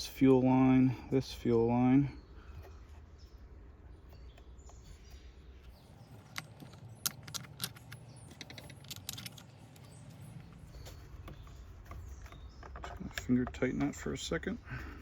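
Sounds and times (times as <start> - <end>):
small metal parts clinking: 6.0 - 13.6.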